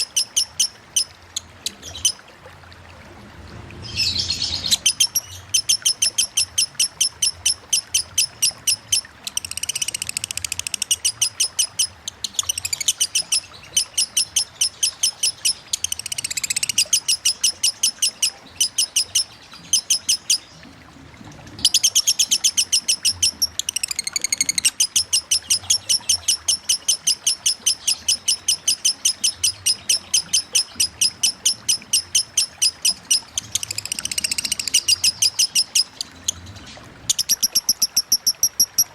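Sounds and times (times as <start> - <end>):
bird chattering: 4.6 - 20.4, 24.6 - 36.1.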